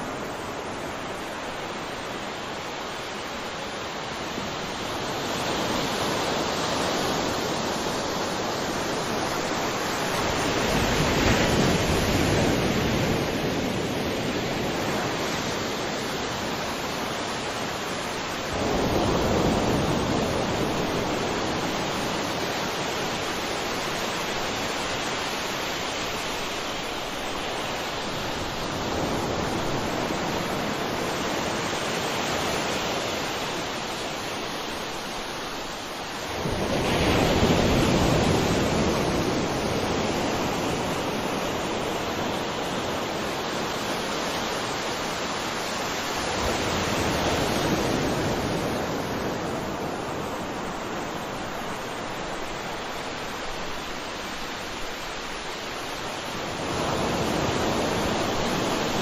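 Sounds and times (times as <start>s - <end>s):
sea waves washing onto shore: 0.0s - 59.0s.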